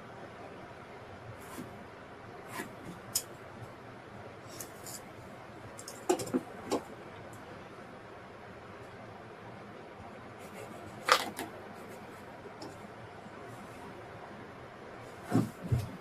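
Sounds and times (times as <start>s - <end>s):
tools clicking and knocking: 5.8s - 6.9s.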